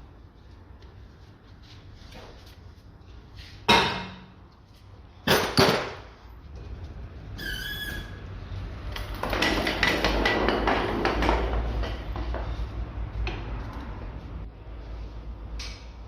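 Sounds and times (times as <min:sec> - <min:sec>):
metal squeak: 0:07.3 - 0:08.4.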